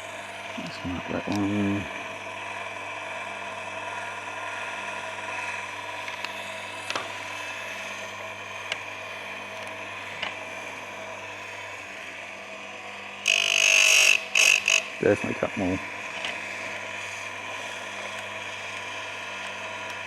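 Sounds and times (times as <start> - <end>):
harsh grinding: 13.2 - 15.6
chainsaw sharpener motor running: 13.2 - 20.0.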